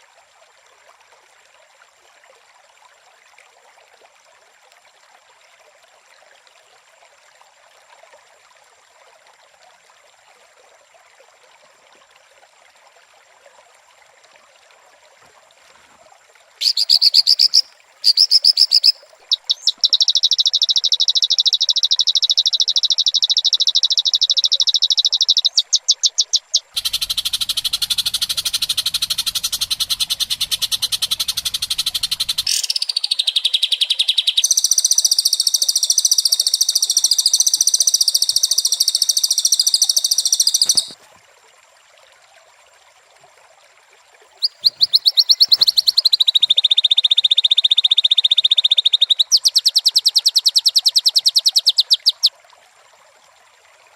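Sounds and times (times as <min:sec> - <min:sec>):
recorded buzzing bird trills: 0:16.6 - 0:41.0, 0:44.4 - 0:52.3.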